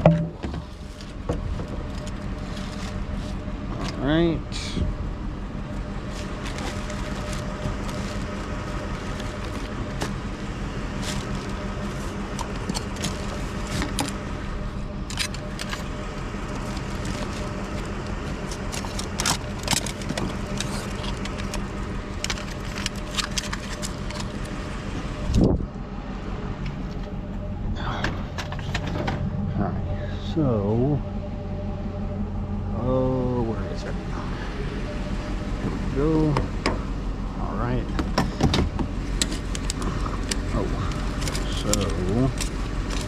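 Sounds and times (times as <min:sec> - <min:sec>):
truck engine running: 0:00.0 - 0:43.0
light clicks and rattles: 0:37.9 - 0:43.0.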